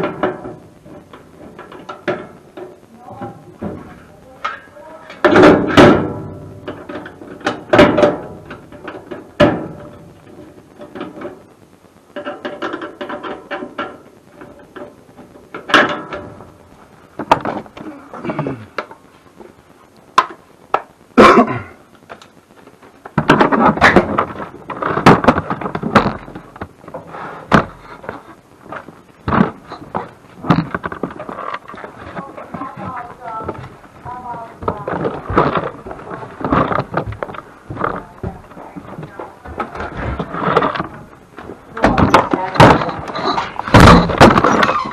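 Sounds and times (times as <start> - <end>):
hard objects clattering: 0.0 - 11.5, 22.1 - 44.9.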